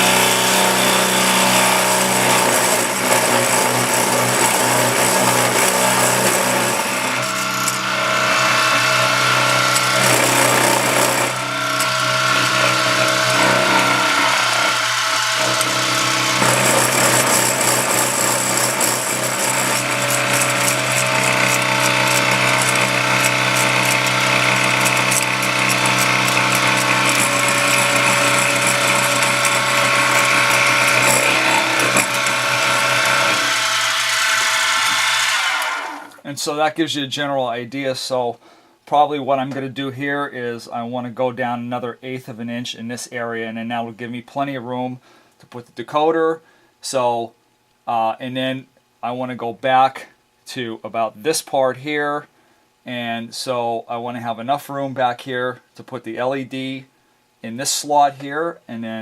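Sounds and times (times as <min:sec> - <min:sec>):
cutter grinding metal: 0:00.0 - 0:36.2
milling machine motor hum: 0:00.0 - 0:36.2.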